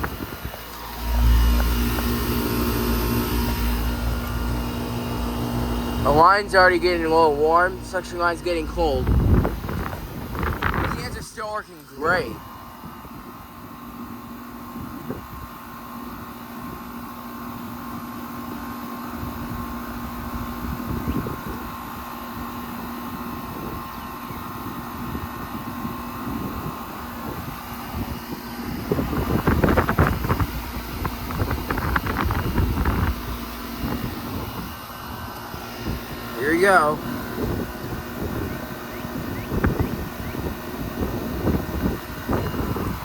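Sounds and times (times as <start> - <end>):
wind buffeting microphone: 0.0 - 16.9, 19.2 - 43.0
air conditioner compressor hum: 0.0 - 43.0
condenser fan noise: 0.0 - 43.0.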